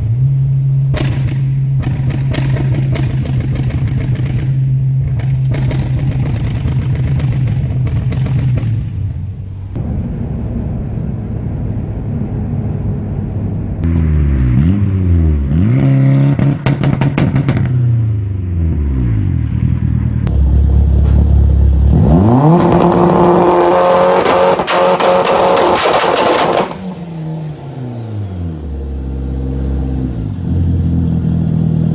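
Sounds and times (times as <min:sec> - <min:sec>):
car engine revving: 0:00.0 - 0:31.9
exhaust backfiring pops: 0:00.9 - 0:15.6, 0:16.3 - 0:17.9, 0:20.2 - 0:27.0.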